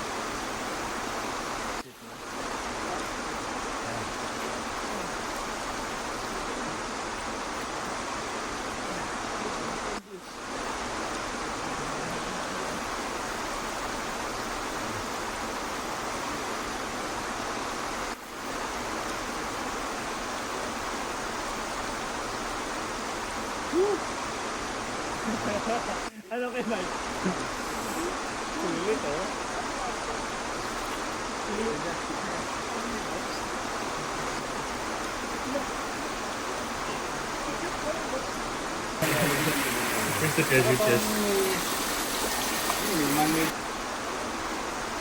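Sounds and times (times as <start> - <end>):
waterfall rushing: 26.8 - 45.0.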